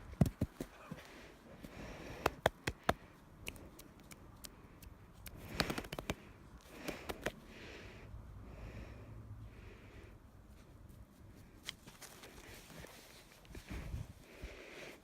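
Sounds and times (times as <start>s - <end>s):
person breathing heavily: 0.8s - 3.8s, 4.5s - 10.4s, 12.3s - 15.0s.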